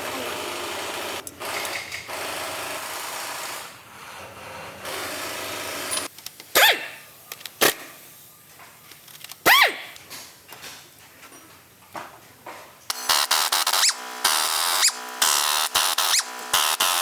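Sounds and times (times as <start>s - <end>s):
short loud yelp: 9.5s - 9.9s
power tool rasping: 12.9s - 17.0s.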